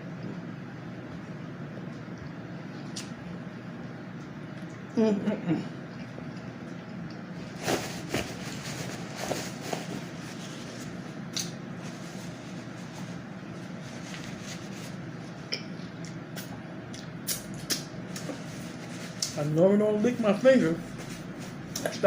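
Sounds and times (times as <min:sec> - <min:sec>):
low steady hum: 0:00.0 - 0:22.0
person chewing: 0:01.8 - 0:03.4, 0:14.9 - 0:19.4.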